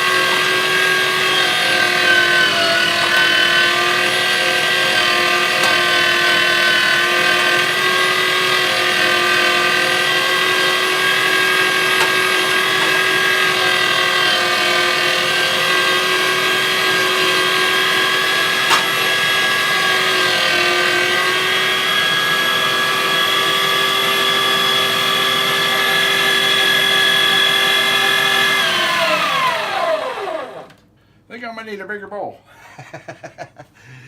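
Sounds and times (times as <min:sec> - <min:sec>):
electric meat grinder whining: 0:00.0 - 0:30.8.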